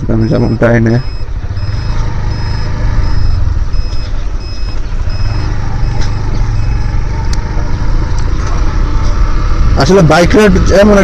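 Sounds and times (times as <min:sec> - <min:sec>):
motorcycle engine rumble: 0:00.0 - 0:11.0
short high-pitched beep: 0:00.2 - 0:07.0.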